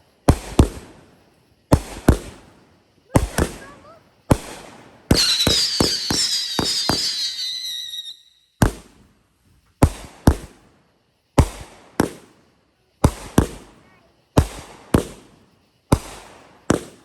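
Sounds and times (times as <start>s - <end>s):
firework cracks: 0.0s - 12.4s, 13.0s - 17.0s
firework bangs: 0.2s - 12.4s, 13.0s - 17.0s
firework whistle: 3.1s - 8.6s.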